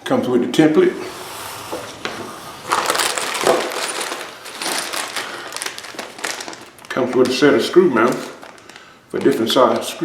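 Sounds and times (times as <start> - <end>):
plastic bags crinkling: 1.5 - 10.0
screws and washers rattling: 2.7 - 6.7.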